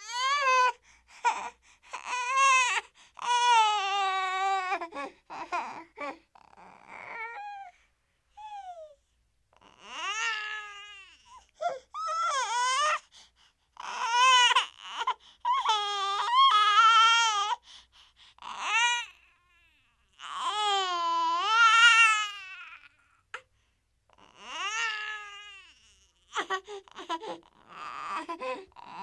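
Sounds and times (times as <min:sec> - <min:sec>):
infant crying: 0:00.0 - 0:07.8, 0:09.6 - 0:13.1, 0:13.8 - 0:17.6, 0:18.4 - 0:19.3, 0:20.2 - 0:23.0, 0:24.2 - 0:29.0.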